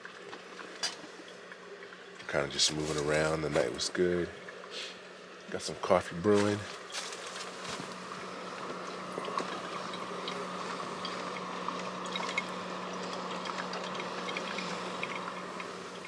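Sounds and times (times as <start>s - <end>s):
coffee maker hissing: 0.0s - 16.0s
low continuous hum: 0.0s - 16.0s
liquid popping and gurgling: 8.0s - 16.0s.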